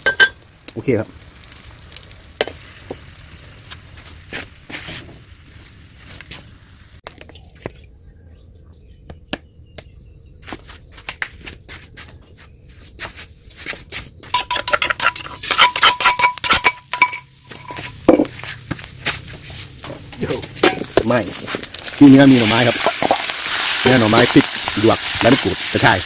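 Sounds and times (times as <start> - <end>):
metal cookware clinking: 0.0 - 0.4, 14.3 - 18.4, 19.8 - 21.3.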